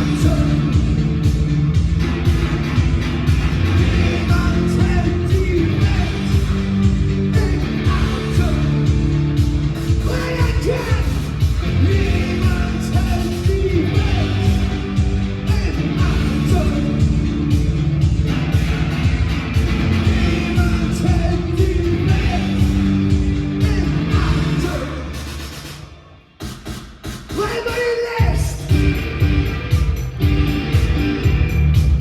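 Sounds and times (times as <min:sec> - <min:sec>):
person yelling singing: 0:00.0 - 0:00.9, 0:03.8 - 0:06.6, 0:07.3 - 0:08.9, 0:10.0 - 0:14.8, 0:15.4 - 0:17.0, 0:20.1 - 0:23.0, 0:23.6 - 0:25.1
live rock music: 0:00.0 - 0:25.9, 0:27.5 - 0:32.0.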